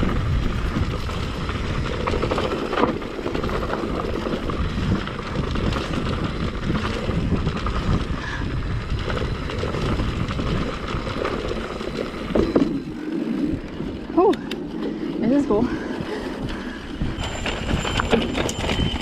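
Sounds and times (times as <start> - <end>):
bike tyres crunching over gravel: 0.0 - 14.1
bike rattling: 0.0 - 19.0
wind buffeting microphone: 0.0 - 19.0.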